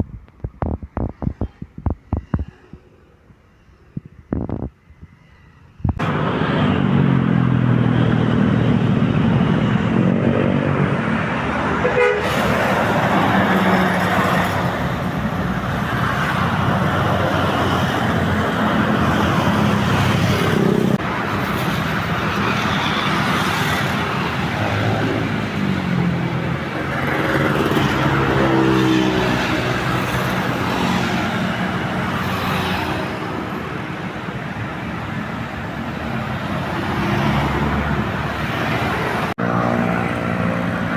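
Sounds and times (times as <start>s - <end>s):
bus diesel engines: 0.2s - 40.9s
vehicle horns tooting: 11.8s - 12.5s.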